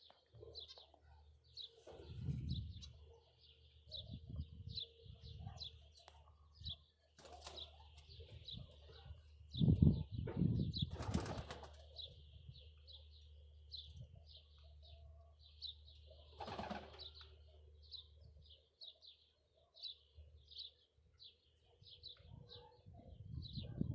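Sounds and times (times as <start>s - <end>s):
wings flapping: 10.9s - 11.8s.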